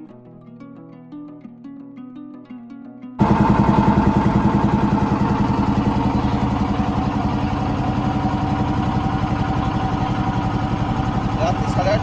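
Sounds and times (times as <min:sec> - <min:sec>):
plucked-string music: 0:00.0 - 0:12.0
motorboat engine throbbing: 0:03.2 - 0:12.0.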